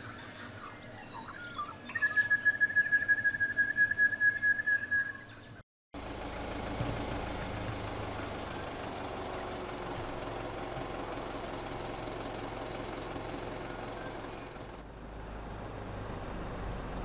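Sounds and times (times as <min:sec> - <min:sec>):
car engine running: 0:06.0 - 0:17.0.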